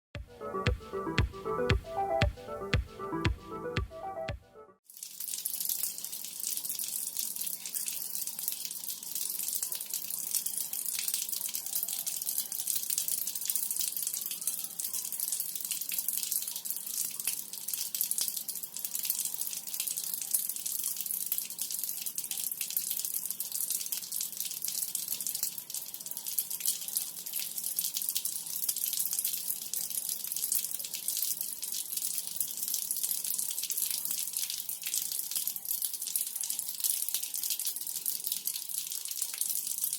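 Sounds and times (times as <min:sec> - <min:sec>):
water splattering onto hard floor: 0:04.9 - 0:14.2.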